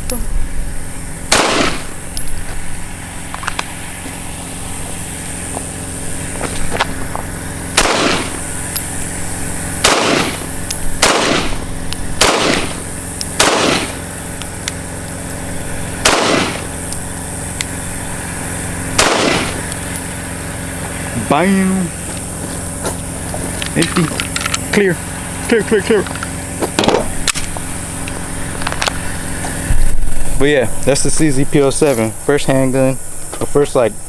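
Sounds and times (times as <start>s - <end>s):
steady low hum: 0.0s - 34.0s
pistol shots: 1.3s - 1.9s, 7.8s - 8.4s, 9.8s - 14.0s, 16.0s - 16.7s, 19.0s - 19.7s.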